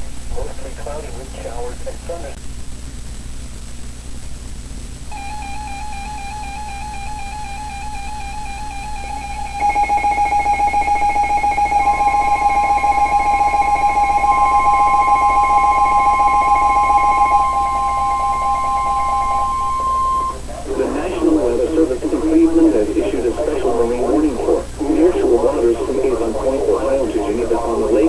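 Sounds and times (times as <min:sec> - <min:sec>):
pulsing electronic buzz: 0:05.1 - 0:20.5
steady electronic alarm tone: 0:05.1 - 0:28.0.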